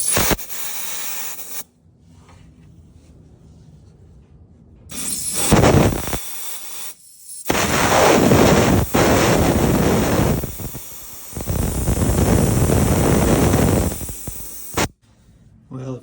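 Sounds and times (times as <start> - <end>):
compressed air hissing from hose: 0.0 - 1.6, 4.9 - 14.9.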